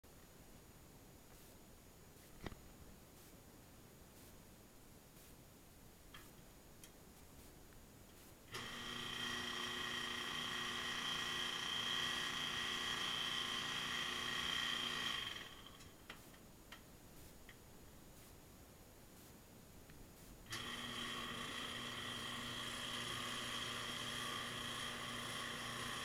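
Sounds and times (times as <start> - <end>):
washing machine whine: 8.5 - 15.9, 20.5 - 26.0.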